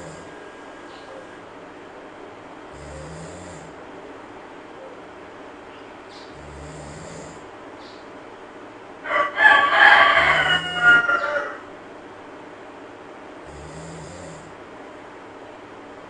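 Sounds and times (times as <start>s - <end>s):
monkey snoring softly: 0.0s - 1.4s, 2.7s - 3.8s, 6.1s - 7.5s, 13.4s - 14.6s
drawn-out animal call: 10.2s - 11.6s.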